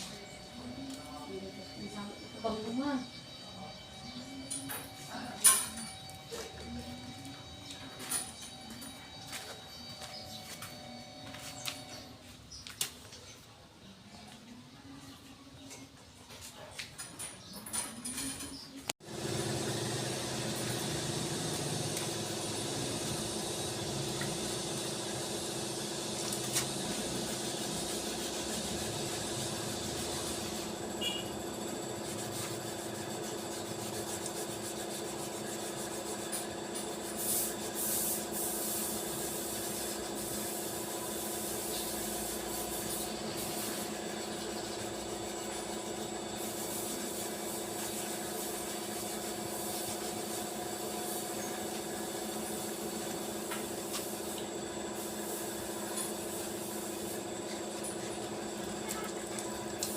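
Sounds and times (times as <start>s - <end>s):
electric power tool running: 19.0s - 37.1s.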